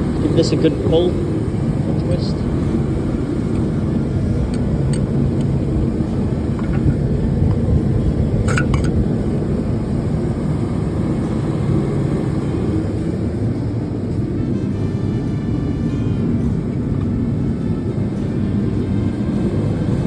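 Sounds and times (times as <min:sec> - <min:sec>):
low mechanical drone: 0:00.0 - 0:20.0.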